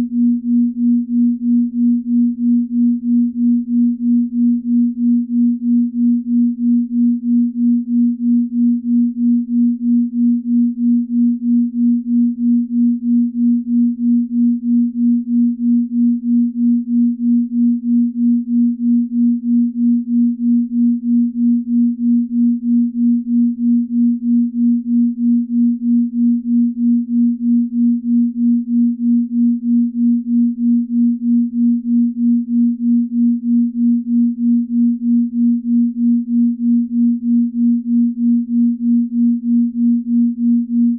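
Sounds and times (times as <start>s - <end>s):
pulsing low pure tone: 0.0s - 40.9s.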